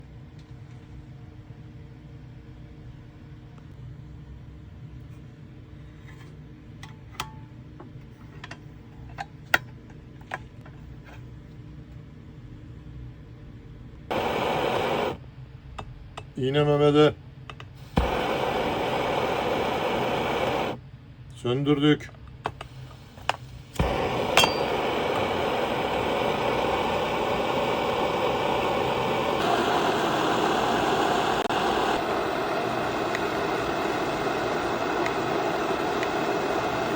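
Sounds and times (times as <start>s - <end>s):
steady low hum: 4.0s - 36.9s
stove burner igniting with thump: 6.0s - 11.3s, 14.1s - 15.2s, 17.5s - 20.8s, 22.3s - 36.9s
stove burner rushing: 14.1s - 15.2s, 16.2s - 20.8s, 22.4s - 36.9s.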